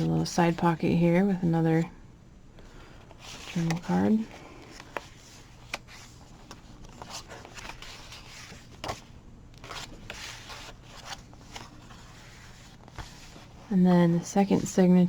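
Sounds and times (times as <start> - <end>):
paper pages rustling: 2.6 - 13.7.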